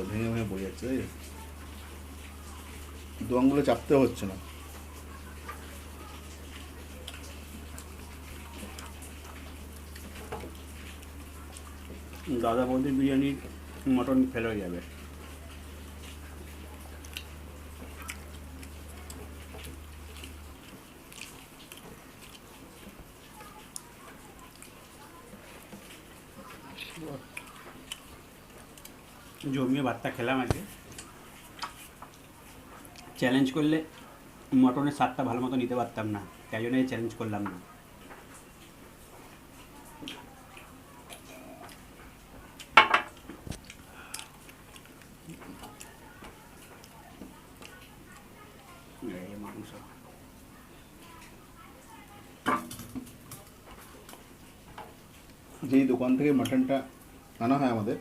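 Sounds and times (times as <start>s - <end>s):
quiet chewing: 0.0s - 58.0s
person eating: 0.1s - 33.2s, 38.1s - 48.9s.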